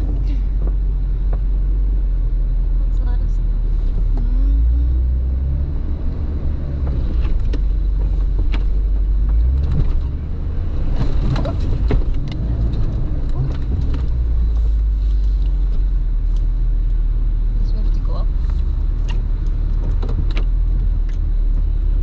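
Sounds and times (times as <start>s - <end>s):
knocks and clunks: 0.0s - 1.6s, 6.8s - 14.7s, 18.5s - 22.0s
off-road vehicle engine: 0.0s - 22.0s.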